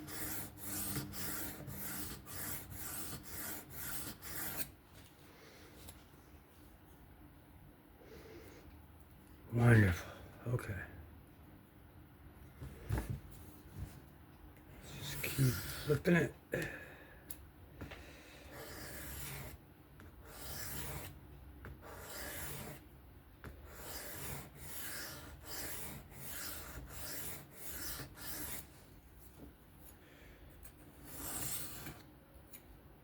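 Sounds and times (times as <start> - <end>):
knife rasping on sharpening stone: 0.0 - 4.7, 23.8 - 28.6.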